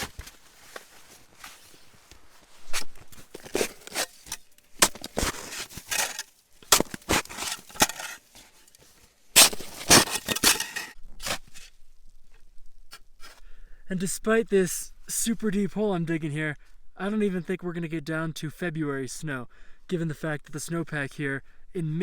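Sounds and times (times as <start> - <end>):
shovel digging into snow: 0.0 - 8.7, 9.3 - 11.7.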